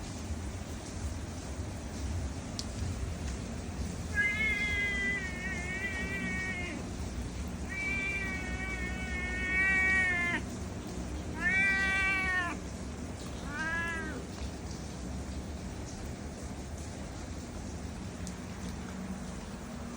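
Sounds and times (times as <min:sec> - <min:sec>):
cat meowing: 0:04.1 - 0:10.6, 0:11.3 - 0:12.7, 0:13.3 - 0:14.4.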